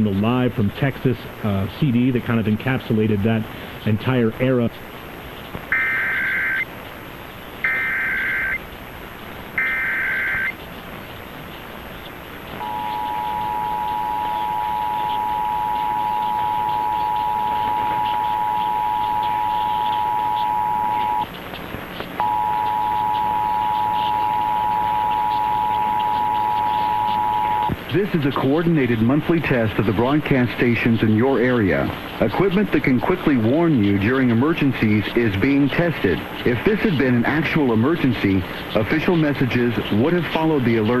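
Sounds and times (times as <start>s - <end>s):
screeching digital data bursts: 5.7s - 6.7s, 7.6s - 8.6s, 9.6s - 10.6s, 12.6s - 21.3s, 22.2s - 27.7s
two-tone attention signal: 7.7s - 8.6s, 9.6s - 10.5s, 12.6s - 21.3s, 22.2s - 27.7s.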